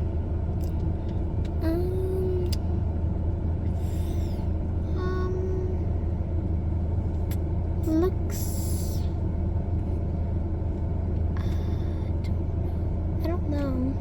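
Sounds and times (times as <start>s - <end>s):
low engine rumble: 0.0s - 14.0s.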